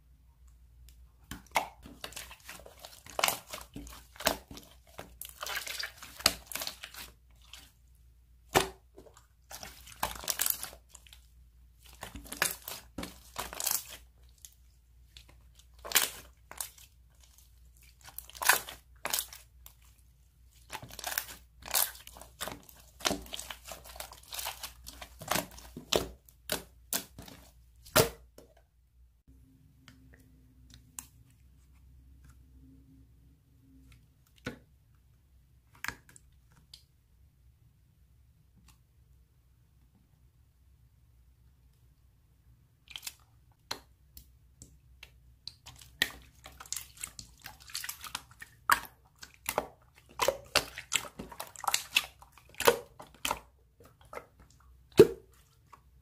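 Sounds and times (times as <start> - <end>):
slime clicking and crackling: 11.8 - 14.5, 15.6 - 19.8, 45.5 - 55.4.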